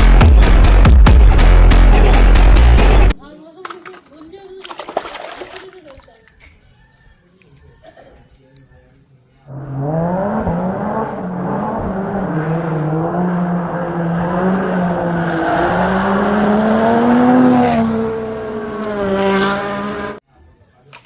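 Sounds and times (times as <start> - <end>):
racing car engine revving: 9.5 - 20.2.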